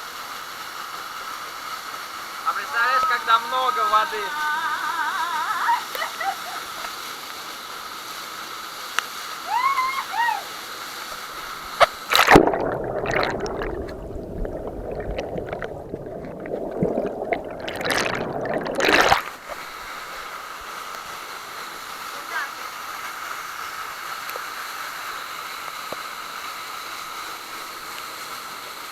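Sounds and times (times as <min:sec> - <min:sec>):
falling water rushing: 0:00.1 - 0:28.9
underwater gurgling and sloshing: 0:11.2 - 0:21.4
splash into water: 0:11.8 - 0:19.7.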